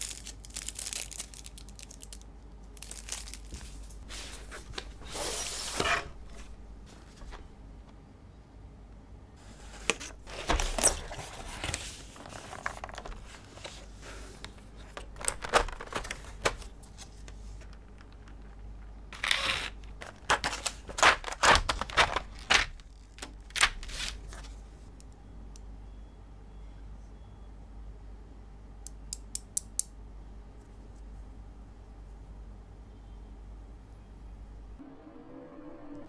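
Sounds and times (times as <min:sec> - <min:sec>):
packaging crinkling and rustling: 0:00.0 - 0:07.6, 0:09.4 - 0:24.6.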